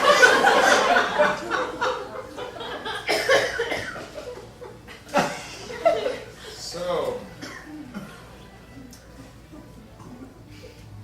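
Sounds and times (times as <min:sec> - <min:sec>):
audience laughing: 0:00.0 - 0:06.6.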